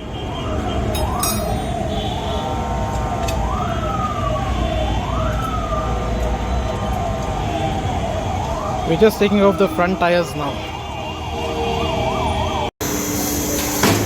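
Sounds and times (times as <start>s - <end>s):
emergency siren wailing: 0.0s - 12.7s.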